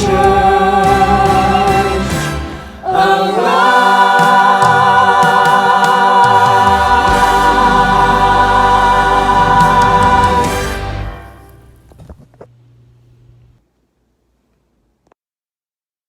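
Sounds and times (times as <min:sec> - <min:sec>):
choir holding final chord: 0:00.0 - 0:11.8.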